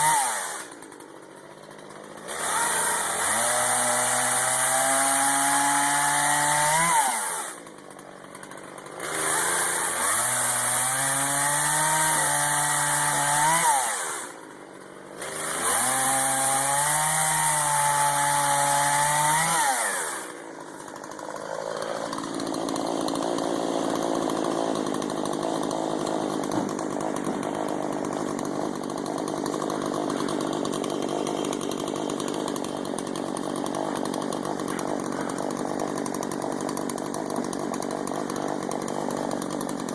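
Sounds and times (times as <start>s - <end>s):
chainsaw revving: 0.0s - 39.9s.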